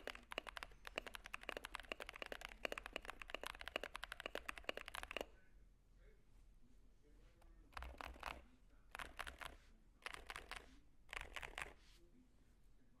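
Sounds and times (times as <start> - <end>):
mechanical keyboard typing: 0.0 - 5.3, 7.8 - 11.8.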